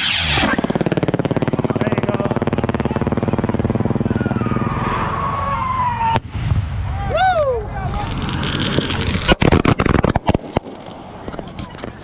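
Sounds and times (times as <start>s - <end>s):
engine pulsing drone: 0.0s - 6.2s.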